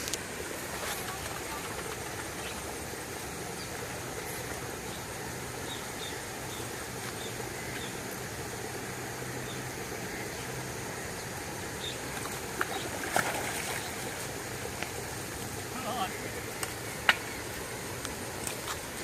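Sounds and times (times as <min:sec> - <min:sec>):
boat engine idling: 0:00.0 - 0:19.0
wind and water hiss: 0:00.0 - 0:19.0.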